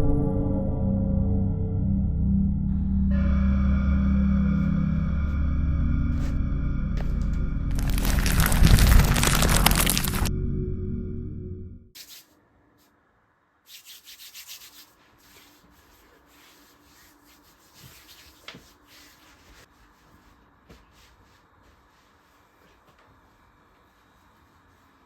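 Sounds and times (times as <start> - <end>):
rapid rubbing strokes: 12.0 - 12.3, 13.7 - 19.7.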